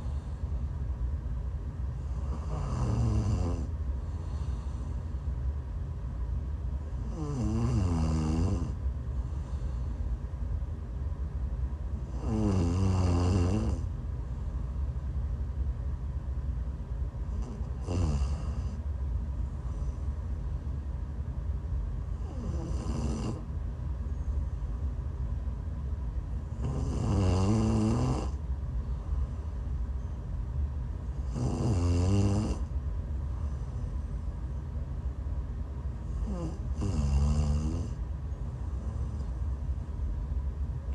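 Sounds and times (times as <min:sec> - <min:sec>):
woman snoring: 0:02.1 - 0:04.8, 0:07.0 - 0:08.8, 0:12.0 - 0:13.9, 0:17.4 - 0:18.8, 0:22.1 - 0:23.5, 0:26.5 - 0:28.4, 0:31.2 - 0:32.7, 0:36.1 - 0:38.0.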